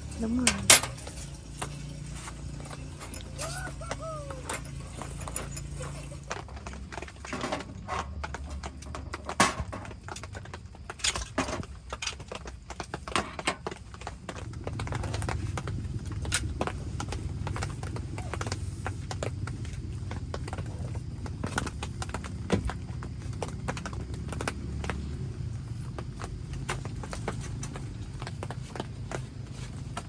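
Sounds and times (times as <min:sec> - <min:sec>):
steady low rumble: 0:14.1 - 0:22.2.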